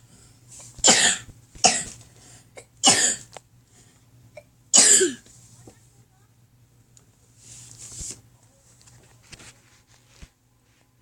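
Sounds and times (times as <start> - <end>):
person coughing: 0.8 - 2.0, 2.6 - 3.3, 4.7 - 5.2.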